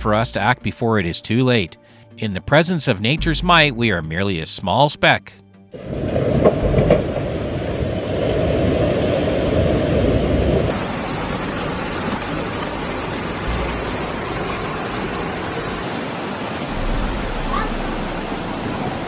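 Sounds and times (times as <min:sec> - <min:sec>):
rushing floodwater: 0:05.8 - 0:19.0.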